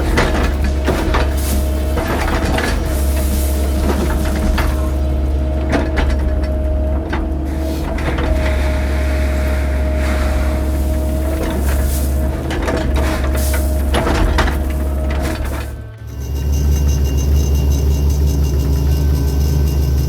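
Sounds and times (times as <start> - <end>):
rushing hiss: 0.0 - 5.7, 7.5 - 15.9
rock and gravel knocks: 0.0 - 15.9
excavator diesel engine running: 0.0 - 20.0.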